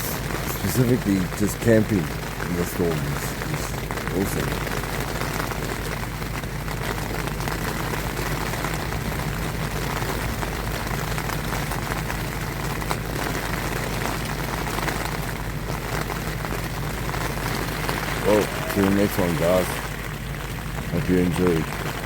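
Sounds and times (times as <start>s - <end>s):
low thunder rumble: 0.0s - 22.0s
steady rain hissing: 0.0s - 22.0s.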